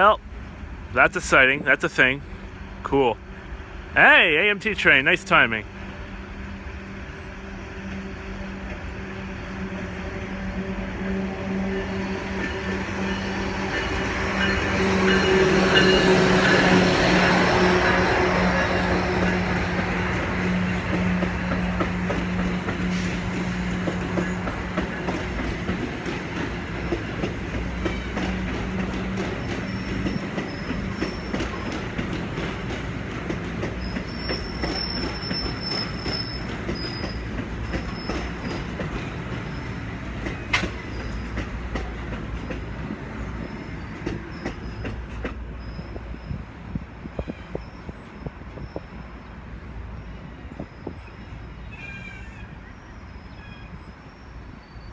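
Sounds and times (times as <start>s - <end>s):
train wheels rumbling on rails: 0.0s - 54.9s
high wheel squeal: 29.3s - 31.8s, 33.8s - 38.7s, 43.2s - 46.4s, 50.5s - 54.9s.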